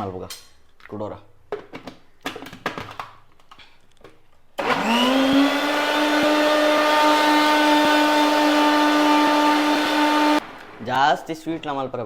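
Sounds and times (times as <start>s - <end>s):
mixer grinder motor whine: 4.6s - 10.8s.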